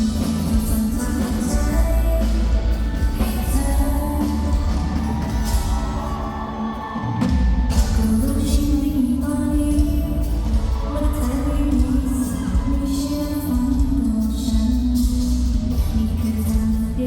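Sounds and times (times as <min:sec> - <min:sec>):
bass and drums backing: 0:00.0 - 0:17.0
woman singing pop song: 0:00.0 - 0:17.0.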